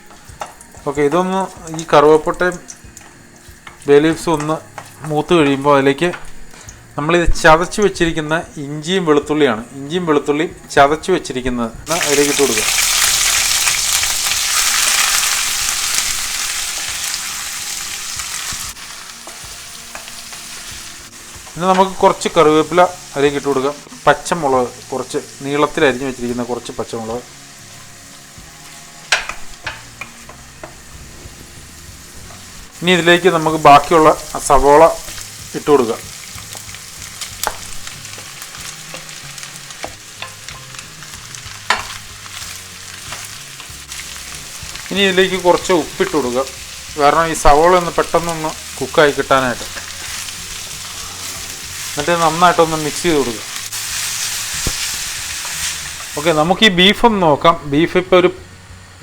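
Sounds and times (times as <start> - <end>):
garlic sizzling in hot oil: 0.0 - 59.0.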